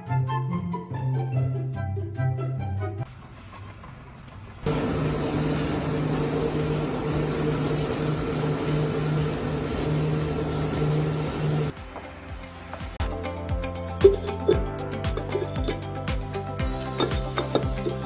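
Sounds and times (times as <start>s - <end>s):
machine humming and whirring: 4.6s - 11.8s.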